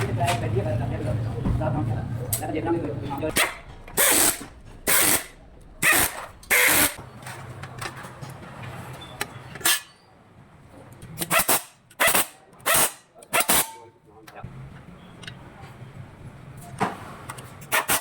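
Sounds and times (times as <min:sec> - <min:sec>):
low hum: 0:03.0 - 0:07.0
power tool bursts: 0:04.0 - 0:07.0.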